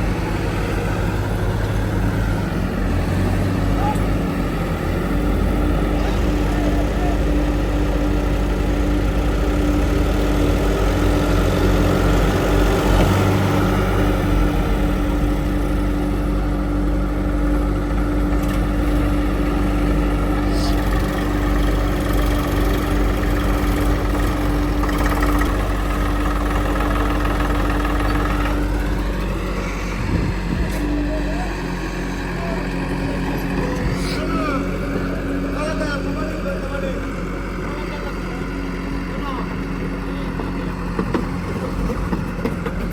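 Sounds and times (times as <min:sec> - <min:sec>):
diesel engine running steadily: 0:00.0 - 0:42.9.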